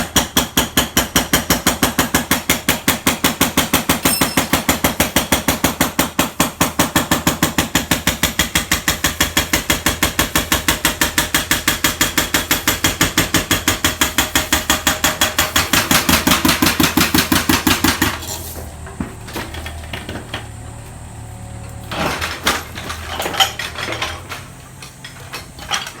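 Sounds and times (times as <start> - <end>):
hydraulic breaker pounding concrete: 0.0 - 20.6, 21.8 - 26.0
metal knocks and clanks: 2.5 - 6.0, 21.6 - 26.0.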